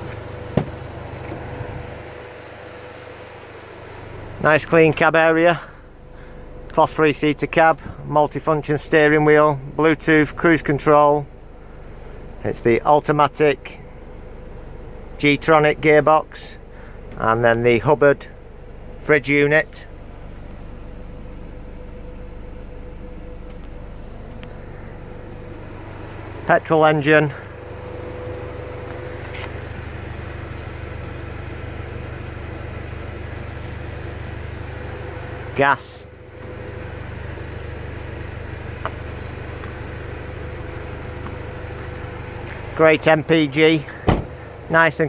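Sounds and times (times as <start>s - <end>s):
van engine idling: 0.0s - 45.0s
steady hum: 16.5s - 45.0s.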